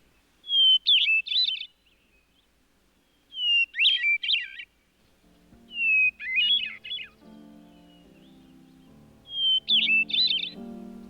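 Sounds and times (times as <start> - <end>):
soft low musical notes: 5.0 - 11.0
thrush singing: 5.4 - 11.0.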